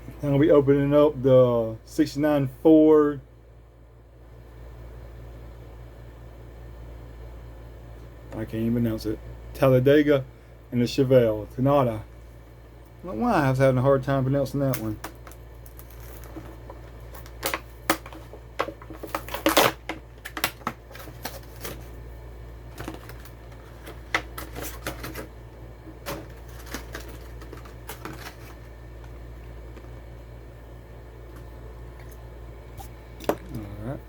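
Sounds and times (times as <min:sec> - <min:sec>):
plastic packaging clicks and crackles: 0:14.7 - 0:21.9, 0:22.7 - 0:25.3, 0:26.0 - 0:29.1.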